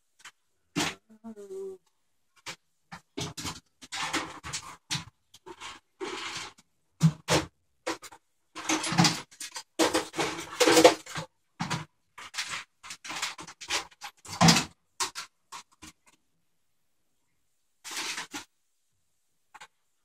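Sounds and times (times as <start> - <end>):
rummaging through tools: 2.4 - 16.2.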